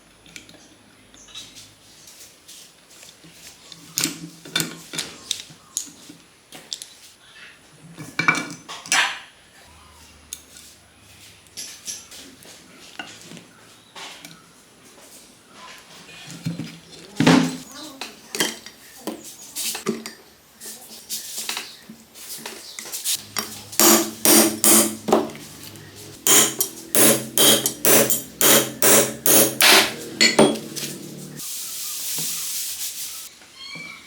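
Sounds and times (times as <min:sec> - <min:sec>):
metal tools knocking on metal: 0:23.2 - 0:31.3
fast hammer blows: 0:23.3 - 0:25.4, 0:26.1 - 0:31.0.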